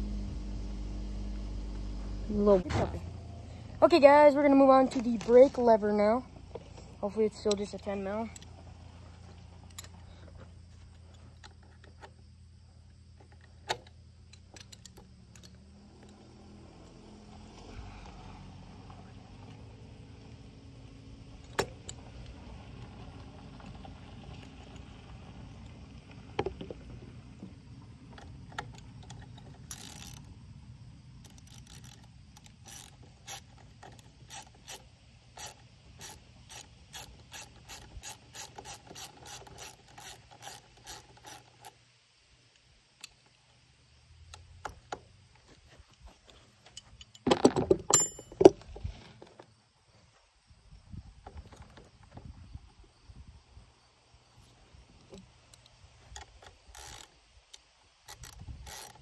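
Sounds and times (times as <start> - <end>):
ratchet wrench clicking: 13.7 - 16.2, 28.5 - 30.3, 31.2 - 41.8, 55.6 - 59.0.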